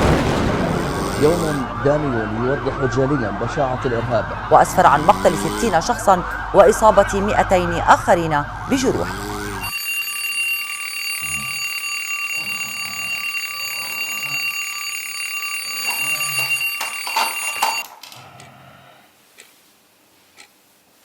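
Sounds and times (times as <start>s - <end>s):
man snoring: 0.9s - 1.6s, 9.0s - 9.7s
alarm clock ringing: 8.8s - 17.9s.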